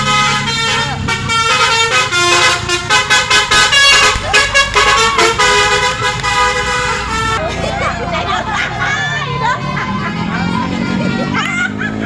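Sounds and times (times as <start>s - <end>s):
multi-tone bus air horn tune: 0.0s - 7.4s.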